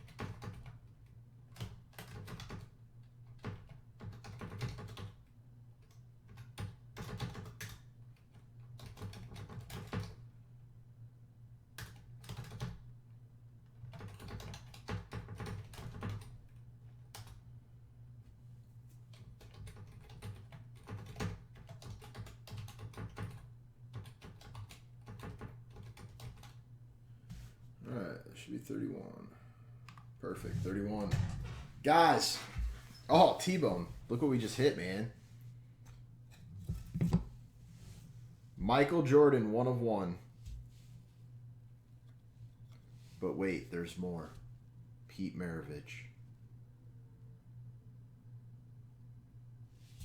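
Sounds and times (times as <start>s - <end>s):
typing on a keyboard: 0.0s - 0.9s, 1.5s - 5.2s, 5.8s - 10.2s, 11.8s - 12.8s, 13.8s - 17.4s, 19.1s - 26.6s.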